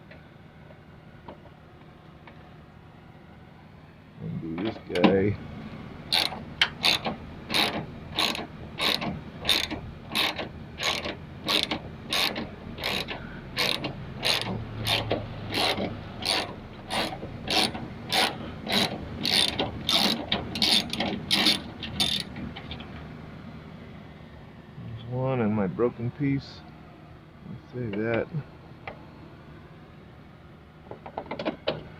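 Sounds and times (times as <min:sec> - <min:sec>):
ratchet wrench clicking: 0:06.1 - 0:22.3.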